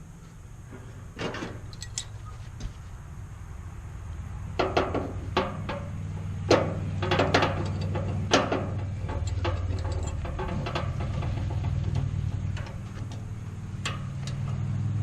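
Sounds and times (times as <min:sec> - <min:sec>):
steady low hum: 0:00.0 - 0:15.0
sharp knocks and clanks: 0:04.5 - 0:14.7.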